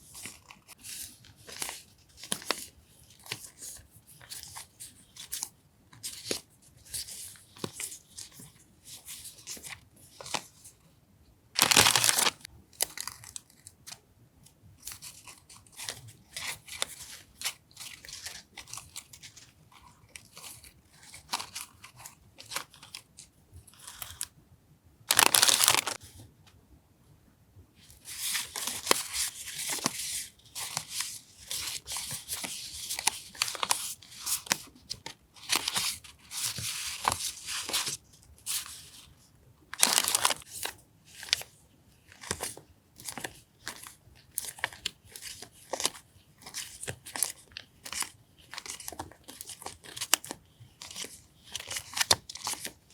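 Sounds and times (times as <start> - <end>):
packaging rustling and crinkling: 11.6 - 13.3, 25.1 - 26.0, 28.1 - 39.1, 39.7 - 52.9.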